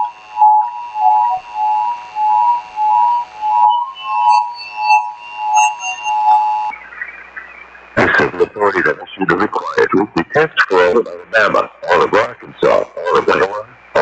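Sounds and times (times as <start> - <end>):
two-tone alert signal: 3.6 - 6.7.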